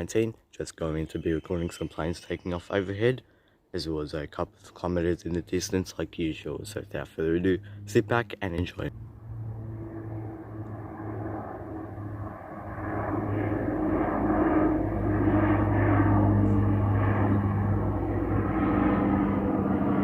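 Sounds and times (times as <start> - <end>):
propeller airliner drone: 4.2 - 20.0.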